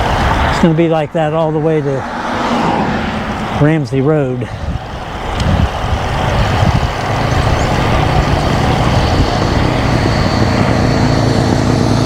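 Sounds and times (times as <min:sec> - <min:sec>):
vehicle engine running: 0:00.0 - 0:12.0
wind noise on microphone: 0:00.0 - 0:12.0.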